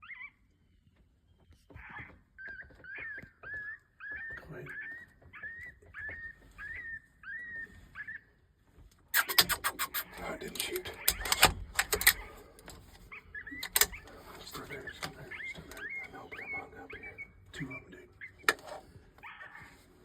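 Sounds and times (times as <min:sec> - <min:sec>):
high whimpering yelps: 0:01.8 - 0:08.2, 0:09.1 - 0:10.2, 0:13.1 - 0:17.4, 0:18.2 - 0:19.8
rapid clattering clicks: 0:09.2 - 0:12.9.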